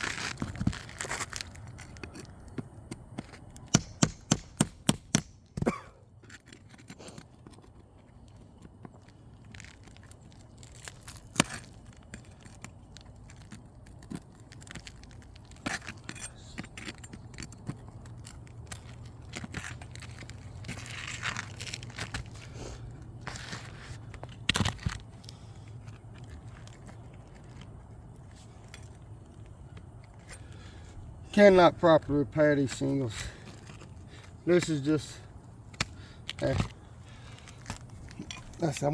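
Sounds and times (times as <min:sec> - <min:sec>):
roof shingles scraping and tearing: 0:00.0 - 0:07.4, 0:08.1 - 0:28.7.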